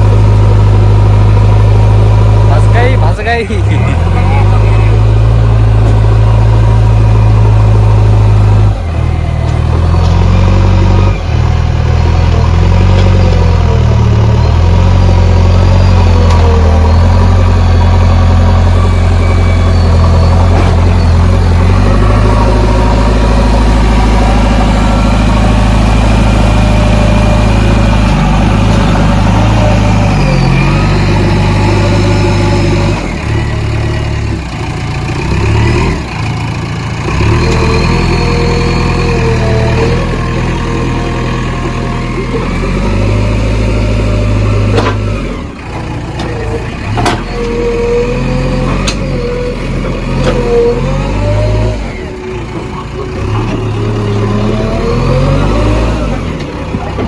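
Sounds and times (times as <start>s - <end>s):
diesel engine revving: 0.0s - 57.0s.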